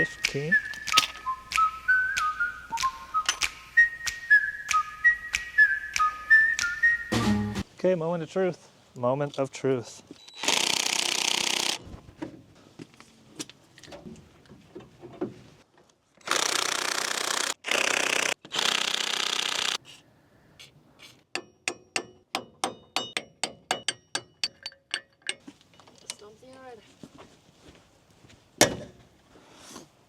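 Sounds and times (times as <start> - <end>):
power tool hammering on bolts: 10.4 - 11.8, 16.2 - 19.8, 21.3 - 25.4.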